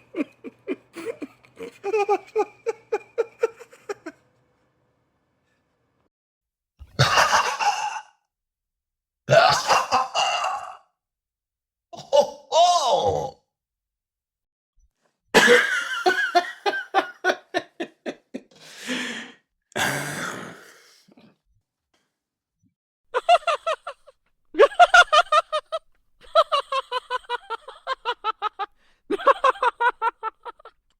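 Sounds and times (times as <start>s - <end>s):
person laughing: 0.0s - 4.2s, 7.0s - 8.1s, 15.4s - 19.3s, 23.2s - 30.8s
long breathy gasps: 18.5s - 21.3s.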